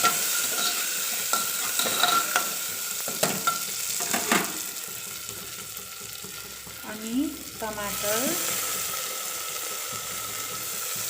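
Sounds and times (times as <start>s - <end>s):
spoon scraping metal pot: 0.0s - 2.5s
food sizzling in hot oil: 0.0s - 11.0s.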